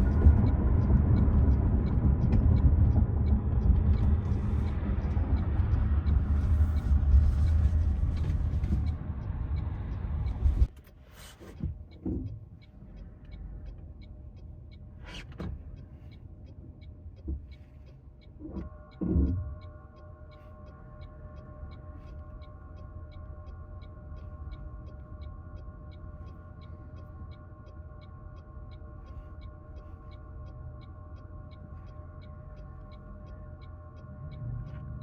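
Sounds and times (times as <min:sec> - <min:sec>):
car cabin low rumble: 0:00.0 - 0:35.0
sustained multi-pitch tone: 0:18.4 - 0:35.0.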